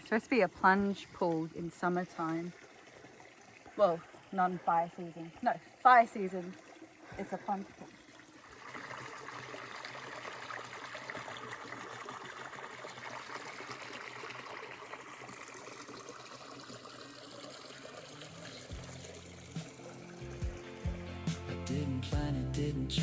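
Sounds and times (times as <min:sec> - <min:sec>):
water running over rocks: 0:00.0 - 0:21.2
music: 0:18.7 - 0:23.0.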